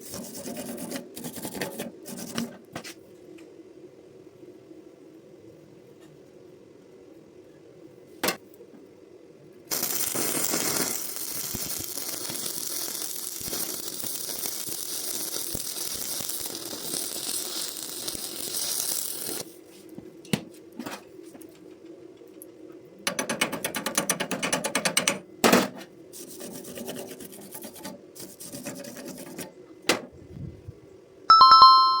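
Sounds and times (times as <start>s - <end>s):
rapid scraping strokes: 0.0s - 2.5s, 26.2s - 29.5s
welding arc crackling and hissing: 9.7s - 19.8s, 26.1s - 29.4s
electronic two-tone chime: 31.3s - 32.0s.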